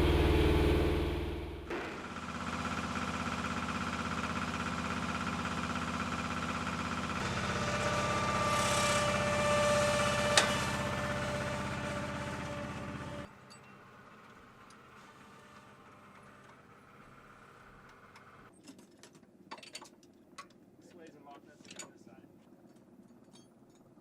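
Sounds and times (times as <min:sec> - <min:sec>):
high whine: 0:00.0 - 0:02.2
machinery engine droning: 0:00.0 - 0:18.5.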